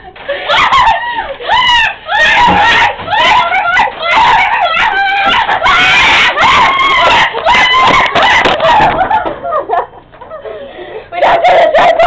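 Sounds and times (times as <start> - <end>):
children shrieking and squealing: 0.4 - 9.1, 11.2 - 12.0.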